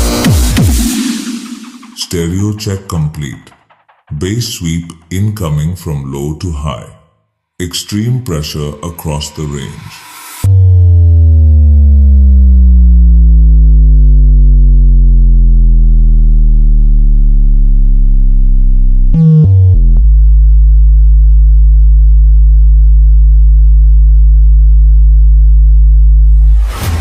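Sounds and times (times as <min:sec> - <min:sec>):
synthesized bass tone: 0:00.0 - 0:01.5, 0:08.1 - 0:27.0.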